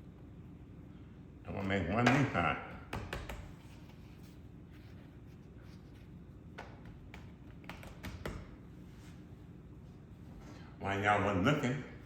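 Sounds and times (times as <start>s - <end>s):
low steady hum: 0.0s - 12.0s
soft kitchen taps and knocks: 2.0s - 3.6s.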